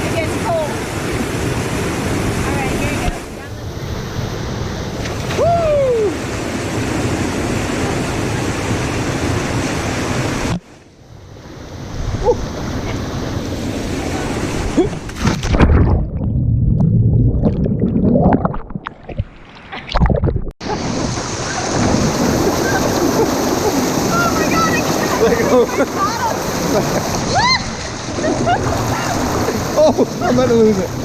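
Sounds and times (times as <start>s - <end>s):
rushing water: 0.0s - 10.9s, 11.5s - 16.2s, 17.1s - 31.0s
underwater gurgling: 14.8s - 26.2s
underwater low thumps: 15.1s - 20.7s.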